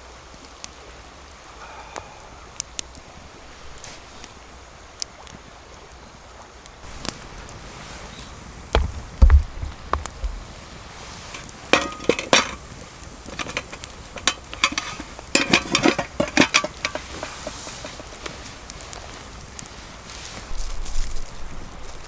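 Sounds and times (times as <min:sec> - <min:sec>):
dull knocks of cookware: 0:08.8 - 0:10.4, 0:11.3 - 0:18.3
utensils clinking and rattling: 0:11.3 - 0:18.4.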